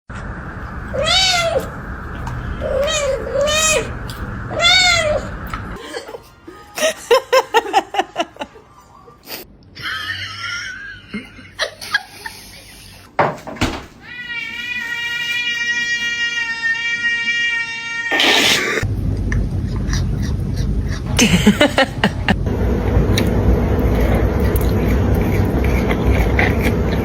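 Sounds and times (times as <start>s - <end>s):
steady background hum: 0.1s - 27.0s
cat meowing: 0.9s - 1.7s, 2.5s - 3.9s, 4.5s - 5.3s, 14.0s - 18.8s.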